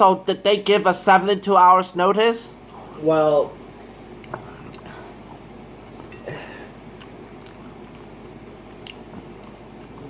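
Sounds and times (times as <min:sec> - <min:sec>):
person chewing food: 0:04.1 - 0:10.0.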